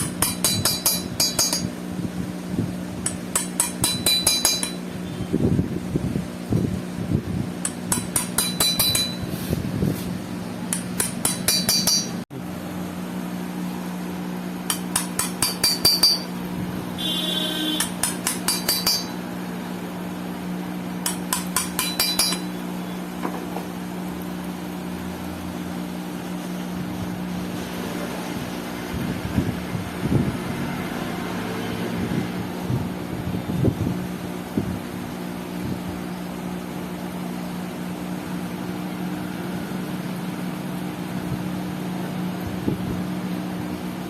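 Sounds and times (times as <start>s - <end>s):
steady machine hum: 0.0s - 30.7s.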